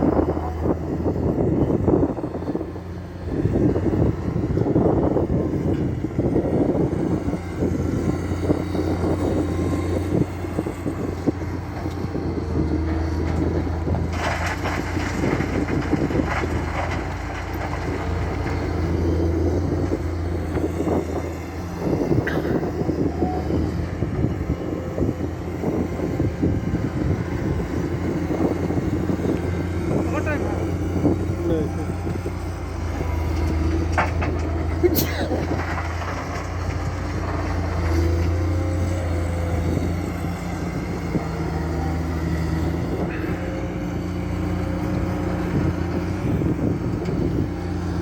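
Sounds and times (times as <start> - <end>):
excavator diesel engine running: 0.0 - 48.0.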